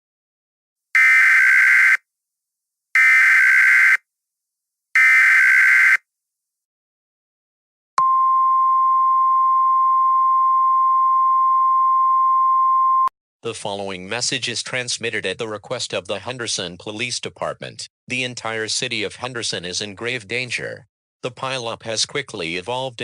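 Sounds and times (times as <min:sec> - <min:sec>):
steady warning tone: 0:01.0 - 0:02.0, 0:03.0 - 0:04.0, 0:05.0 - 0:06.0.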